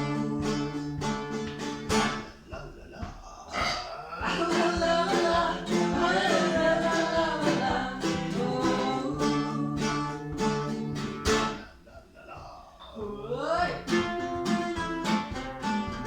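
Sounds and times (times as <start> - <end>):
mandolin plucked and strummed: 0.0 - 2.6, 4.2 - 11.7, 13.6 - 16.0.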